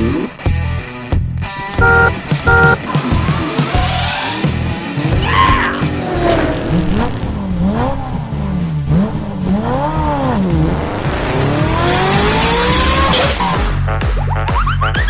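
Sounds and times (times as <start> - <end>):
electronic music with synth tones: 1.8 - 2.9, 10.9 - 15.0.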